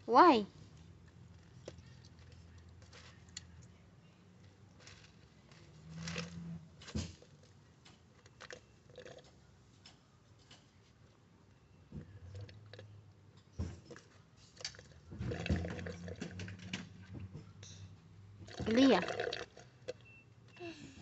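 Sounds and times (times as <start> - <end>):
toddler chewing: 8.1 - 9.4, 12.0 - 13.0.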